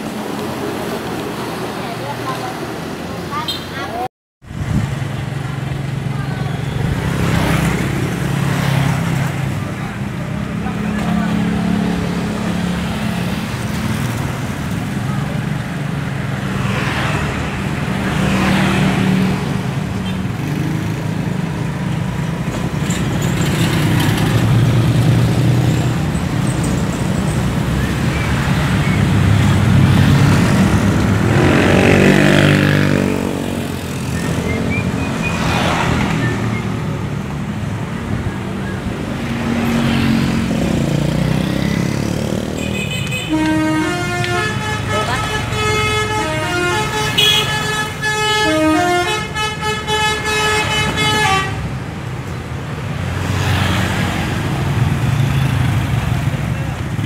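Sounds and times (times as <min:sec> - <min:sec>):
large vehicle engines passing: 0:04.5 - 0:42.8, 0:50.6 - 0:57.0
multi-tone horn tooting: 0:42.5 - 0:51.7.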